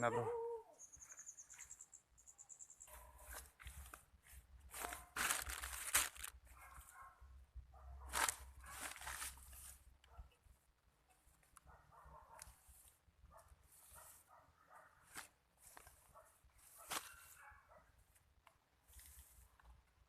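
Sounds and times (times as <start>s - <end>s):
footsteps through dry vegetation: 2.9s - 6.9s, 8.1s - 9.9s, 12.5s - 14.4s, 15.0s - 18.2s.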